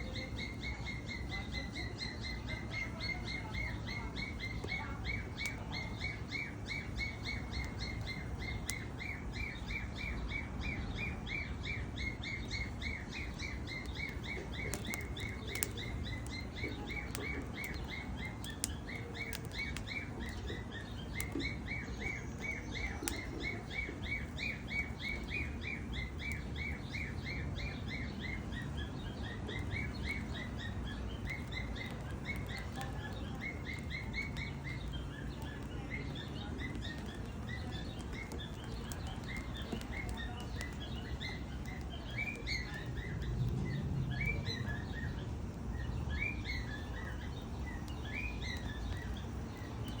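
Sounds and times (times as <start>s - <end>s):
bird chirping: 0.0s - 50.0s
fire crackling faintly: 0.0s - 50.0s
low rumble: 43.1s - 46.1s.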